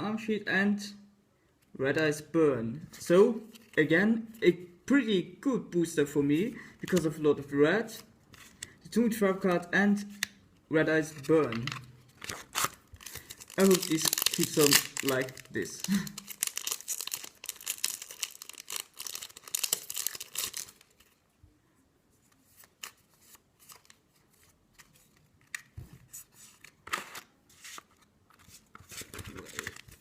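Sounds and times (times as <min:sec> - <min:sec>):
cards and wrapper rustling: 0:11.1 - 0:21.2, 0:22.3 - 0:30.0
foil wrapper crinkling and tearing: 0:11.5 - 0:21.1.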